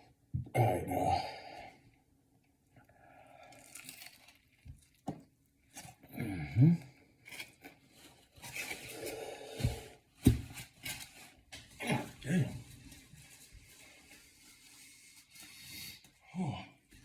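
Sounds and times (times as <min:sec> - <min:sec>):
paper wrapper crinkling: 0:03.5 - 0:05.1.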